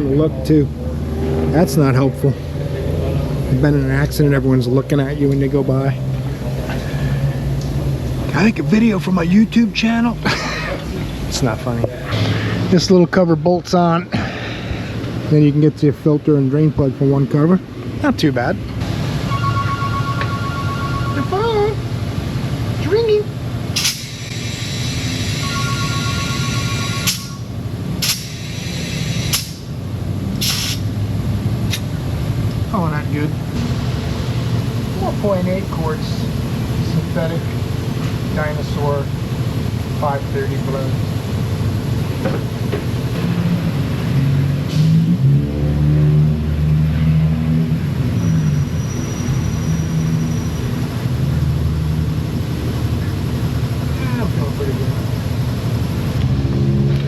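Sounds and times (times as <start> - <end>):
vehicle engine running: 0.0 - 12.8, 27.0 - 44.8, 45.4 - 57.0
phone ringing: 19.2 - 21.4, 25.4 - 27.5
brief hiss: 30.4 - 30.8.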